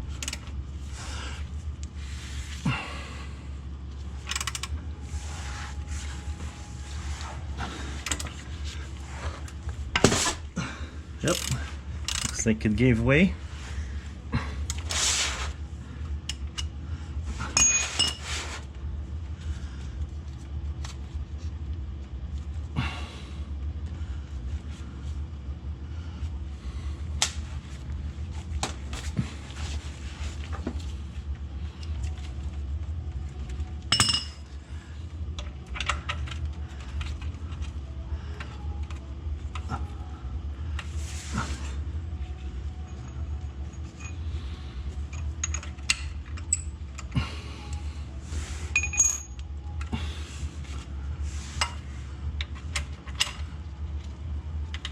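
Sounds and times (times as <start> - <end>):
steady low hum: 0.0 - 54.9
wrench clinking on metal: 33.9 - 34.4, 48.8 - 49.4.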